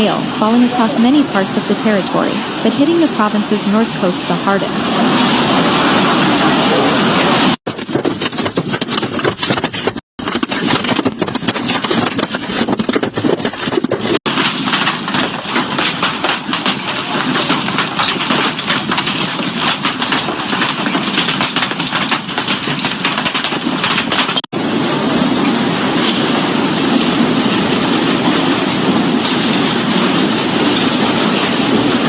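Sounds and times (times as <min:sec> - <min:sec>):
hail and rain pelting down: 0:00.0 - 0:07.6, 0:14.3 - 0:32.0.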